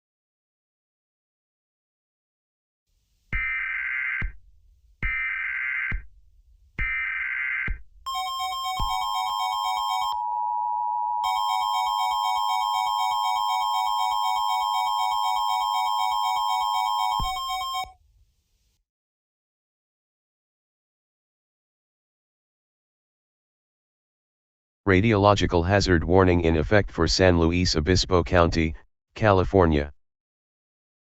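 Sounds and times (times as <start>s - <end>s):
electronic attention tone: 8.1s - 17.9s.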